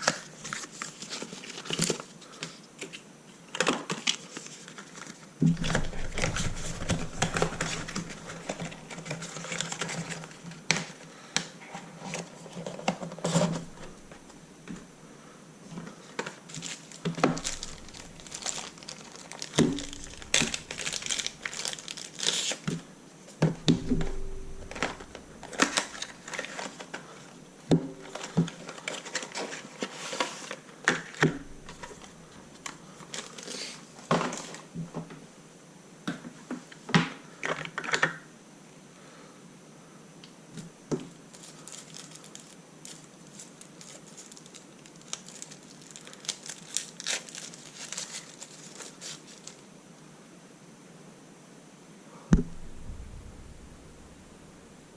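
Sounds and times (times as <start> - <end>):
packaging crinkling and rustling: 0.0 - 14.9, 15.7 - 22.9, 23.6 - 27.4, 28.0 - 34.8, 41.0 - 49.7.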